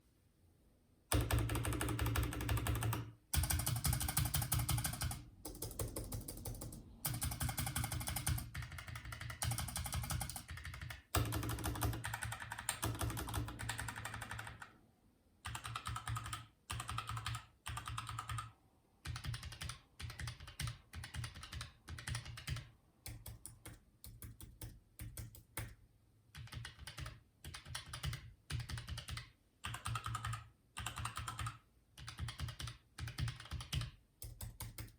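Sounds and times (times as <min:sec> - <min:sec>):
keyboard typing: 0:01.1 - 0:14.8, 0:15.4 - 0:34.9.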